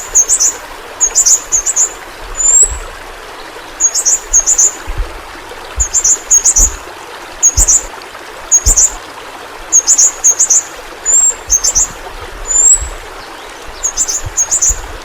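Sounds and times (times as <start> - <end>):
bird chirping high: 0.0 - 2.8, 3.8 - 4.8, 5.8 - 6.8, 7.4 - 7.9, 8.5 - 9.0, 9.7 - 14.9
watery hiss: 3.8 - 15.0
dull low thumps: 4.8 - 6.8.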